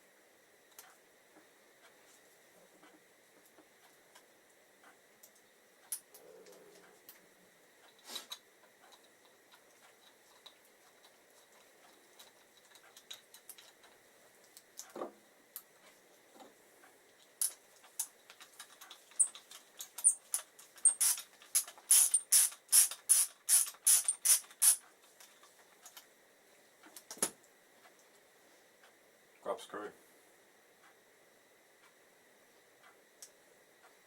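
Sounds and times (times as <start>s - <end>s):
socket ratchet clicking: 20.8s - 24.8s.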